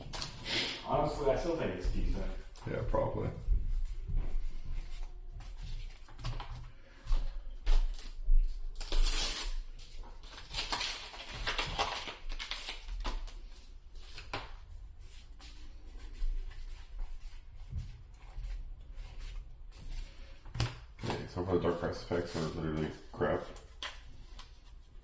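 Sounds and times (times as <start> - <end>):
foil pack crinkling and tearing: 8.7 - 13.5
cards being handled: 8.8 - 15.8, 19.0 - 25.0.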